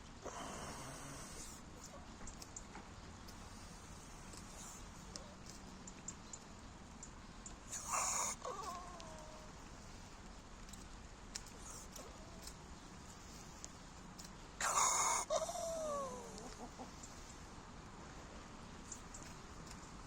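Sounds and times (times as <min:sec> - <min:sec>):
chicken raspy call: 0:07.7 - 0:09.7, 0:14.6 - 0:17.3.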